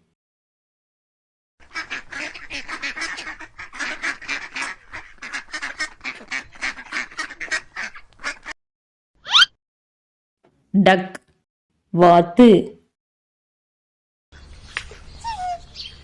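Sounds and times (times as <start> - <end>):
rapid short animal calls: 9.3 - 9.5.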